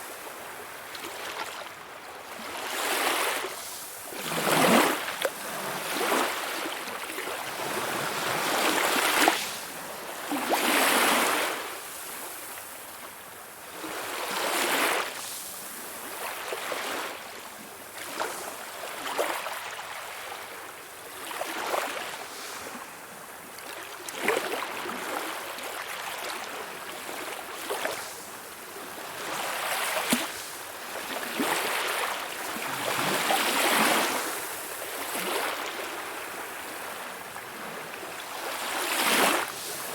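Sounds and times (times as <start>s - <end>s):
small splashes of breaking waves: 0.1s - 13.1s, 13.7s - 39.9s
sea waves washing in: 27.5s - 39.9s.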